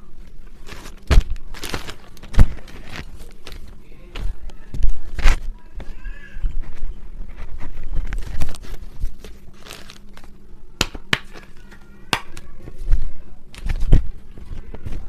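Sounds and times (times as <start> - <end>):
plastic packaging crinkling and tearing: 0.4 - 5.4, 6.6 - 10.4.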